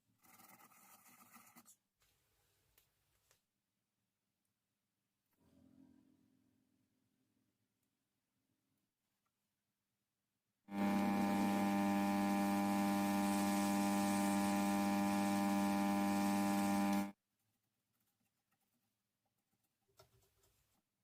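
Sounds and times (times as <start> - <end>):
steady electric buzz: 10.7 - 17.2.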